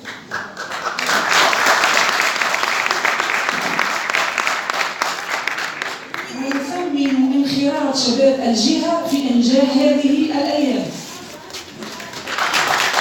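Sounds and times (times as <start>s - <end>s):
audience applauding: 0.0s - 7.2s, 11.9s - 13.0s.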